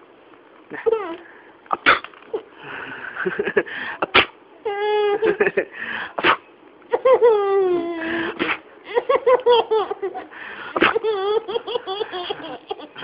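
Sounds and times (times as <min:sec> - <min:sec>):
baby laughing: 0:06.9 - 0:13.0.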